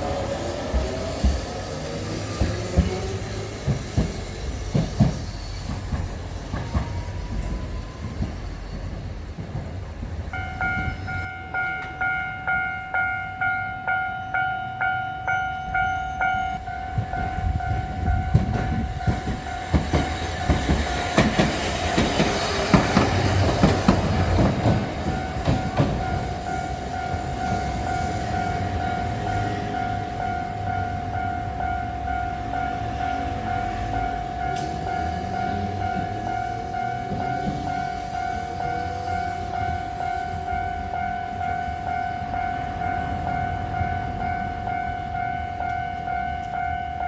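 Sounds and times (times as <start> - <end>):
tram rumbling over rails: 0.0 - 47.0
level crossing warning bell: 10.3 - 20.1, 22.7 - 47.0.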